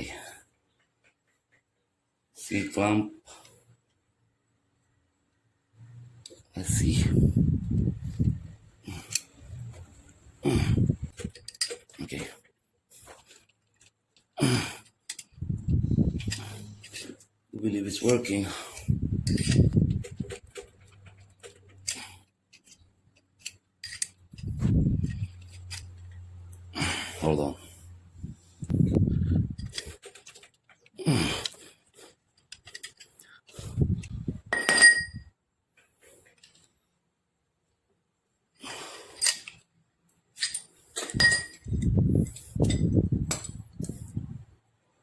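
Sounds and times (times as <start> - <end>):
metal tools clinking: 11.1 - 12.4, 14.8 - 15.4, 16.2 - 27.1, 32.4 - 33.6, 34.5 - 35.3, 39.0 - 39.6, 40.3 - 44.1.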